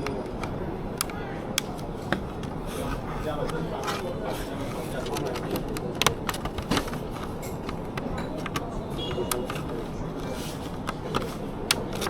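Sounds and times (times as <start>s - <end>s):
voice: 0.0s - 7.0s
steady background noise: 0.0s - 12.0s
light clicks and taps: 4.9s - 12.0s.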